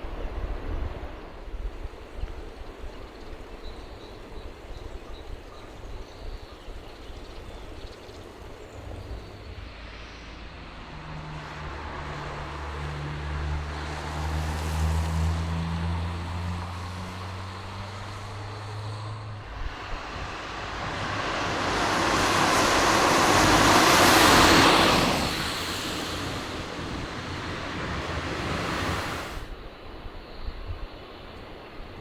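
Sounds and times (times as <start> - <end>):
vehicle engine hum: 7.5 - 29.6
tyre and road noise: 8.8 - 29.6.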